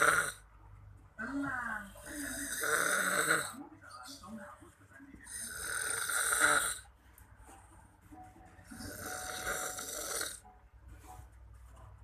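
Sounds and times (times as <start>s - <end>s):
person snoring: 0.0s - 0.4s, 2.1s - 3.6s, 5.3s - 6.8s, 8.7s - 10.4s.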